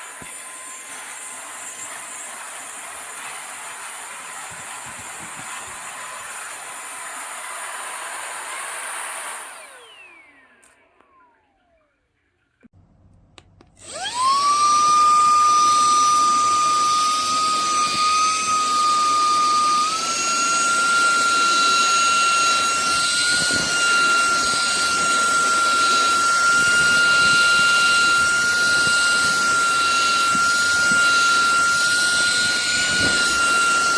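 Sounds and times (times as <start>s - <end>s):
handheld vacuum cleaner running: 0.0s - 12.0s, 13.6s - 33.9s
vacuum switch clicks: 13.1s - 13.8s.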